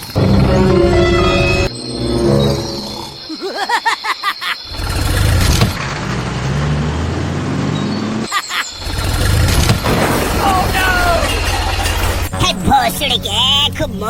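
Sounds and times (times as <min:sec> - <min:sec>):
vehicle engine rising in pitch: 0:00.2 - 0:03.3.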